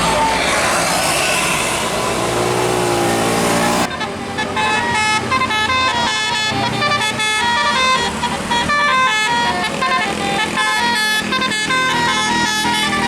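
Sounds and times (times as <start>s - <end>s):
loud noise: 0.0s - 3.9s
musical air horn melody: 0.0s - 13.0s.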